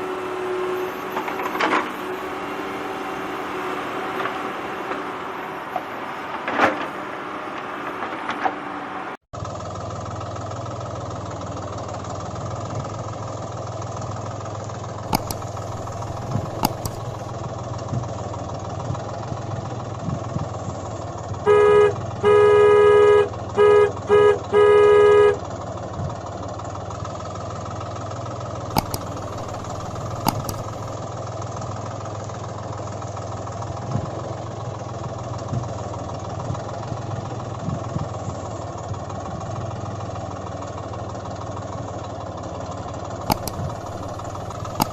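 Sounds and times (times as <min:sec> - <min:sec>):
tractor engine running: 0:00.0 - 0:44.9
sharp clicks: 0:15.1 - 0:17.3, 0:28.7 - 0:31.0, 0:43.3 - 0:44.9
vehicle horn honking: 0:21.4 - 0:25.4.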